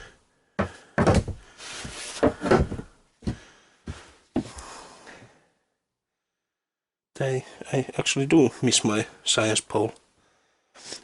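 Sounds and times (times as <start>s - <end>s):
wooden floor panels knocking: 0.6s - 3.4s.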